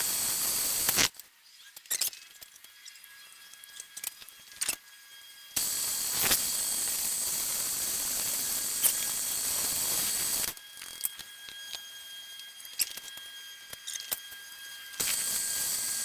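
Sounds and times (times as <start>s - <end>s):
power drill boring through wood: 0.0s - 1.1s, 5.6s - 10.6s, 15.0s - 16.0s.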